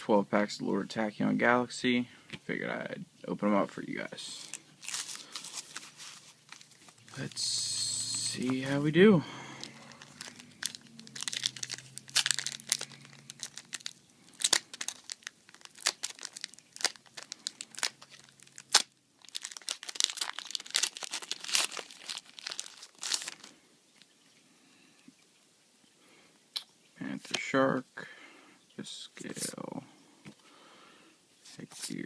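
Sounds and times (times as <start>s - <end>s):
foil wrapper crinkling and tearing: 4.2s - 24.1s.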